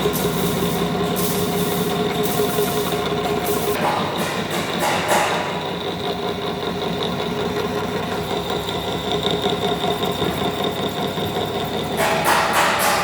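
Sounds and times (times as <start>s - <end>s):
metal lathe humming and whining: 4.8s - 12.5s.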